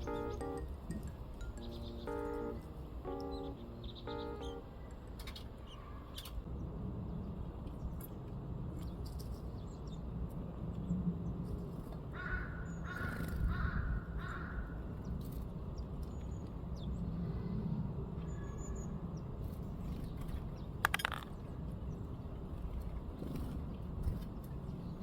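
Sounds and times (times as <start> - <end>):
sharp clatter of clicks: 20.8 - 21.4.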